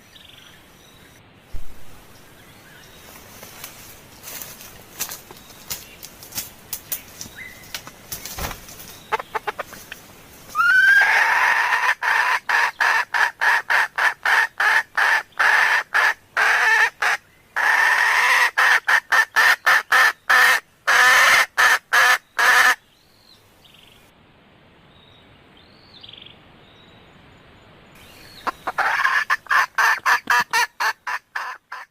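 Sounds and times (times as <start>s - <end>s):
faint distant bird calls: 0.0s - 24.1s, 24.9s - 31.9s
hen clucking: 9.1s - 10.0s, 10.6s - 22.8s, 28.4s - 31.9s.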